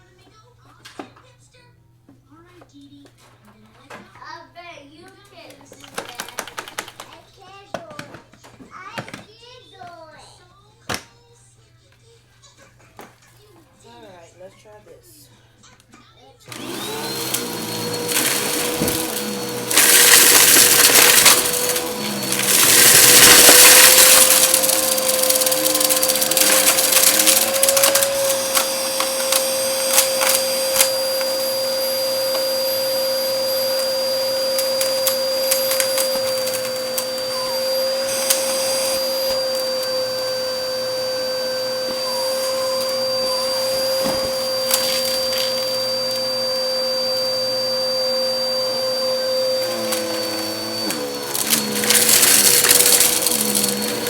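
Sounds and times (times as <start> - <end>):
vacuum cleaner running: 16.5 - 54.0
debris crackles: 17.2 - 31.4, 43.6 - 45.8, 49.6 - 54.0.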